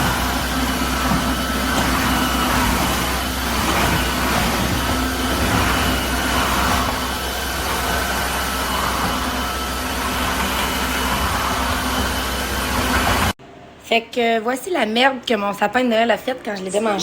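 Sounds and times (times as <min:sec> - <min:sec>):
vacuum cleaner running: 0:00.0 - 0:13.4.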